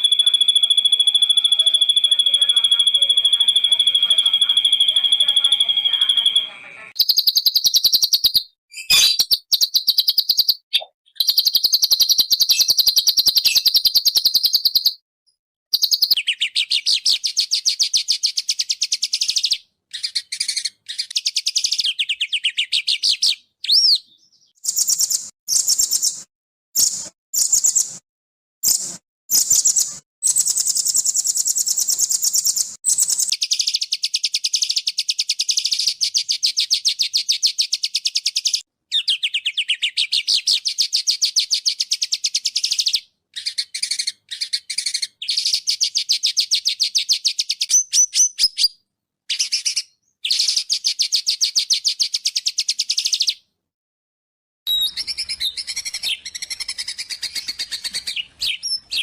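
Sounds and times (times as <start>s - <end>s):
songbird singing fast harsh runs: 0.0s - 15.0s, 28.6s - 48.7s, 54.7s - 59.0s.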